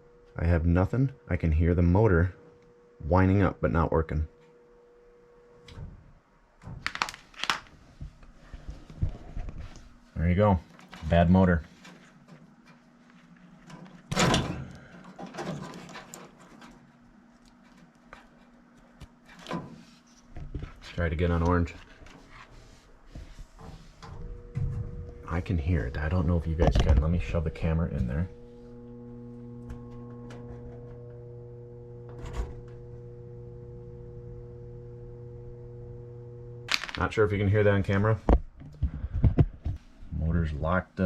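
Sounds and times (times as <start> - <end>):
faint steady hum: 0.0 - 41.0
metal parts clattering and scraping: 13.6 - 16.8.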